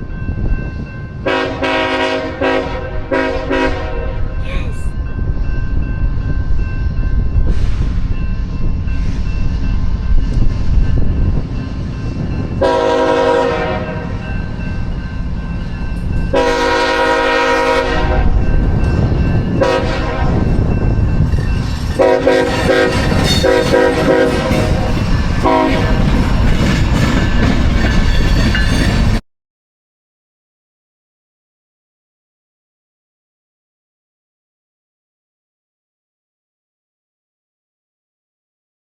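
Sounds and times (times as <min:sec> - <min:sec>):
freight train rumbling past: 0:00.0 - 0:29.2
locomotive air horn blasts: 0:01.3 - 0:04.3, 0:12.6 - 0:14.2, 0:16.3 - 0:18.4, 0:19.6 - 0:20.5, 0:22.0 - 0:26.1.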